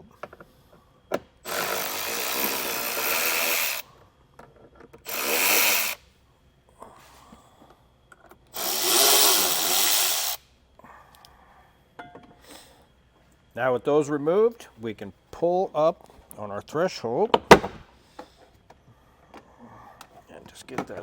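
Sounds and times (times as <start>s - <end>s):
cordless drill spinning out screws: 1.4s - 3.8s, 5.0s - 6.0s, 8.5s - 10.4s.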